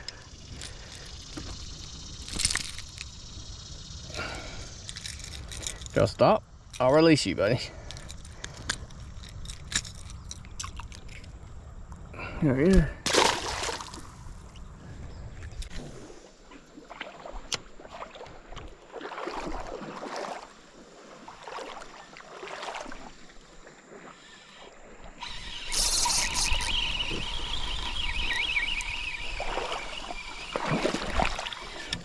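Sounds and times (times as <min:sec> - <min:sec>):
water splashing against board: 0:13.1 - 0:14.1, 0:29.4 - 0:32.0
hiss with wavering buzz: 0:25.2 - 0:31.9.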